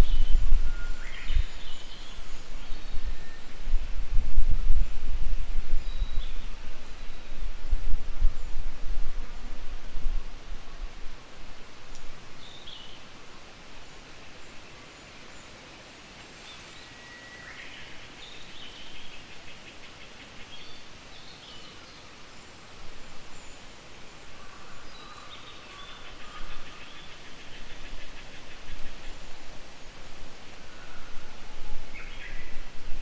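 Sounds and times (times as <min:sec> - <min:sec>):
bird singing: 0:00.0 - 0:03.5, 0:16.4 - 0:22.1, 0:24.4 - 0:29.4.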